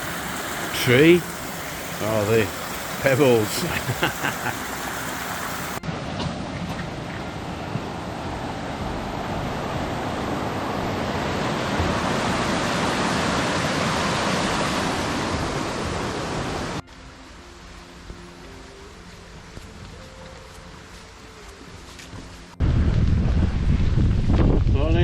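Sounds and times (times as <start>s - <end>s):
stream rushing over rocks: 0.0s - 22.6s.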